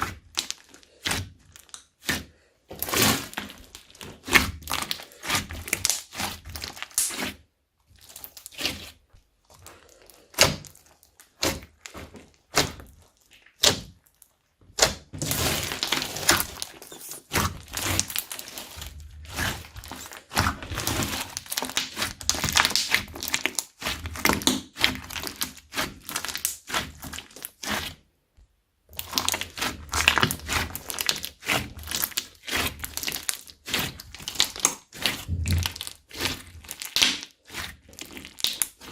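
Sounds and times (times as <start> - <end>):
slime squished by hand: 0.0 - 7.4, 8.0 - 28.0, 28.9 - 38.9.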